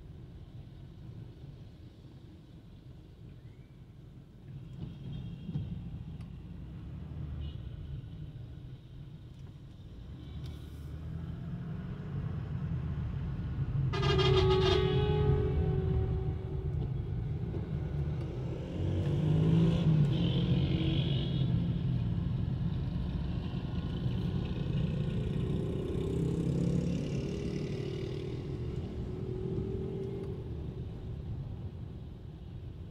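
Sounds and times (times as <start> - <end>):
vehicles passing: 10.0 - 32.9.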